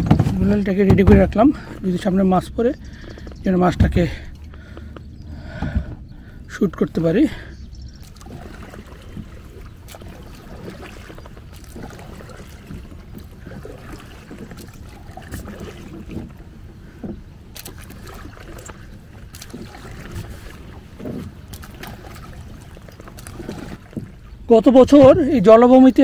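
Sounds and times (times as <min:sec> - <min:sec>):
knocks against boat hull: 0:00.0 - 0:01.5, 0:03.1 - 0:06.1
paddle splashing in water: 0:00.0 - 0:25.8.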